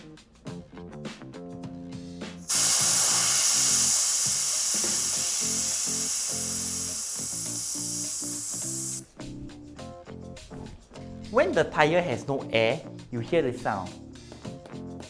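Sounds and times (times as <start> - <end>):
air hissing from tyre valve: 2.4 - 9.0
light background music: 7.0 - 15.0.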